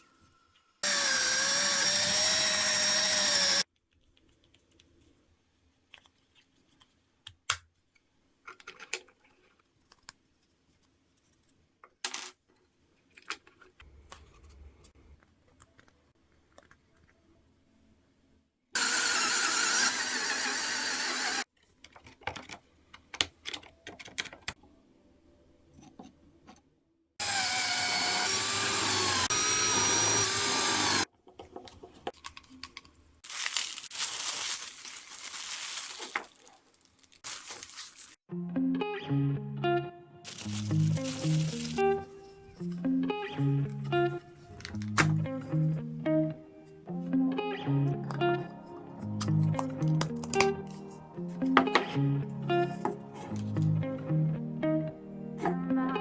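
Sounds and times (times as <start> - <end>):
power tool running: 0.8 - 3.6, 18.8 - 21.4, 27.2 - 31.0
clicks and taps of tools: 49.2 - 50.6, 51.5 - 52.0.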